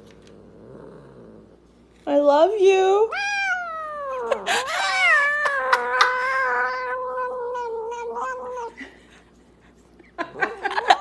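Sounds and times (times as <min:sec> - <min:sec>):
cat yowling: 0:03.1 - 0:08.7.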